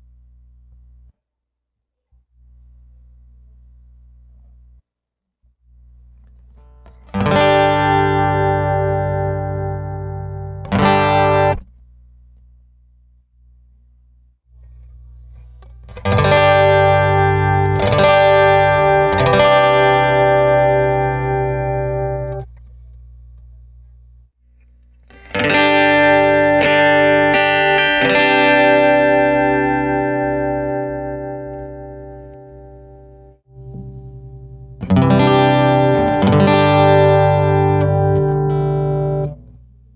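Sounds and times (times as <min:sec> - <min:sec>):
faint low hum: 0:00.0 - 0:07.2, 0:08.1 - 0:16.1, 0:20.3 - 0:25.4, 0:37.0 - 0:39.9
acoustic guitar chords strummed: 0:06.5 - 0:11.7, 0:25.1 - 0:39.6.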